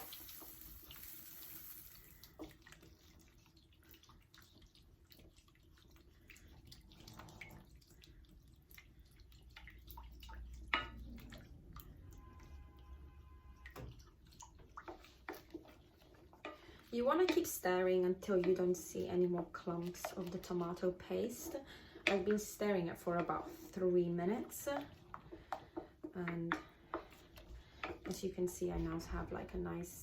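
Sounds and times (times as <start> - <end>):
spoon stirring paste in pan: 12.2 - 29.6.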